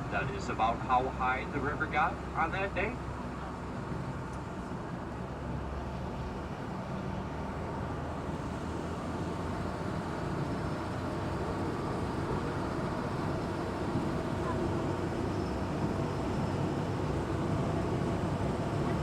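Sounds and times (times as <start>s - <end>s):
boat engine droning: 6.2s - 19.0s.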